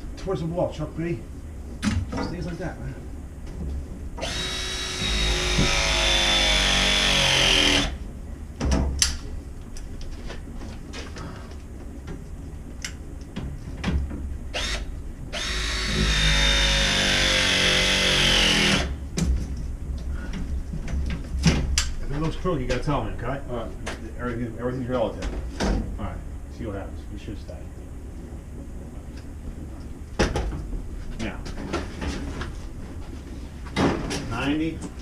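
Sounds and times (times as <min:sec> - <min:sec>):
power tool motor whine: 0:04.2 - 0:08.0, 0:14.6 - 0:19.0.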